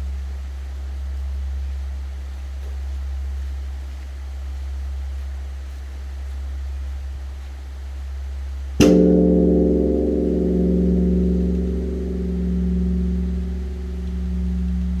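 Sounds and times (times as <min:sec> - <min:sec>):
deep bell hum: 0:08.8 - 0:15.0
large bronze temple bell ringing: 0:08.8 - 0:15.0.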